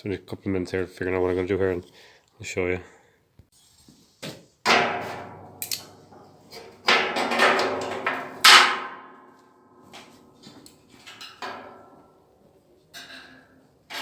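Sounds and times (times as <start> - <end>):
steel parts knocking and clanking: 4.7 - 9.1, 10.6 - 12.0.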